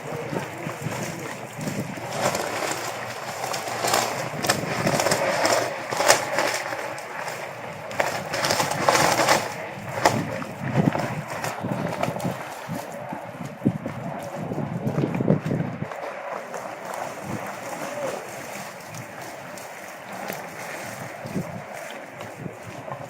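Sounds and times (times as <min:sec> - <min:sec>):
storm wind gusting: 0:00.0 - 0:23.0
sharp knocks and rattles: 0:00.9 - 0:12.5.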